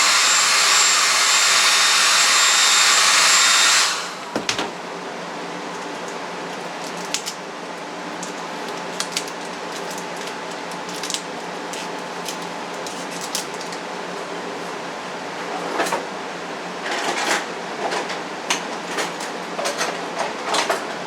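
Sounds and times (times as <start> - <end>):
paper and tape crackling: 8.2 - 13.8.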